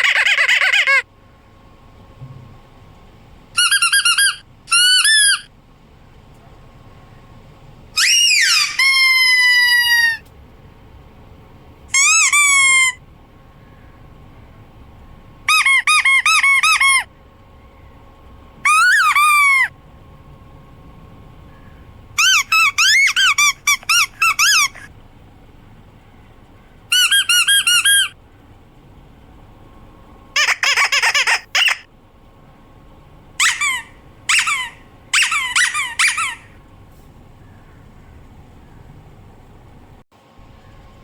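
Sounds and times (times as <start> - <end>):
squeaky dog toy: 0.0 - 1.0, 3.6 - 5.5, 8.0 - 10.2, 11.9 - 13.0, 15.5 - 17.1, 18.6 - 19.7, 22.2 - 24.9, 26.9 - 28.2, 30.4 - 31.9, 33.4 - 36.5.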